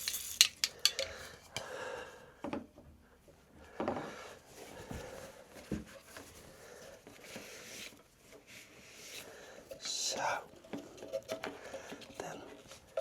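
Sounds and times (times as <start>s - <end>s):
metal part scraping: 0.0s - 1.4s
rustling and handling noise: 0.0s - 1.6s.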